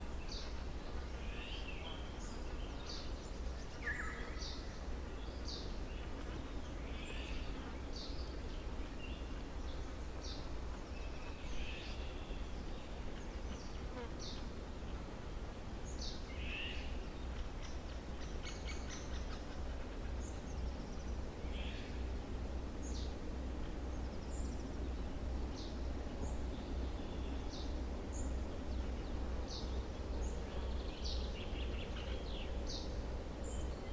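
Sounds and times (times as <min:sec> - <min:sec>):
songbirds singing: 0:23.9 - 0:33.9.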